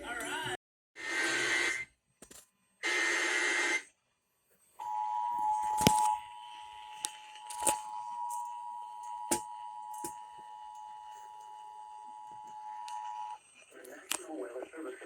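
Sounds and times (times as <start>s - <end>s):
radio hiss: 1.0s - 1.9s, 2.8s - 3.9s, 5.8s - 15.0s.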